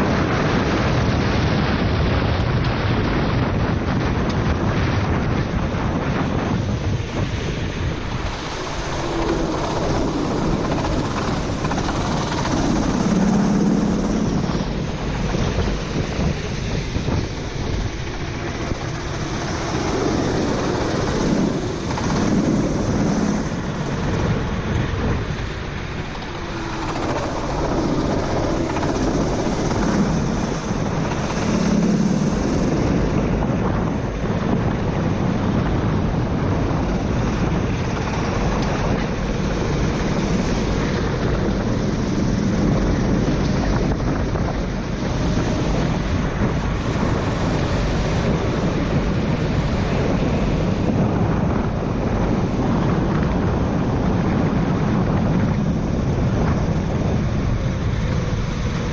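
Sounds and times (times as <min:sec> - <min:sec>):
wind noise on microphone: 0:00.0 - 0:58.9
kart engine revving: 0:18.5 - 0:33.1.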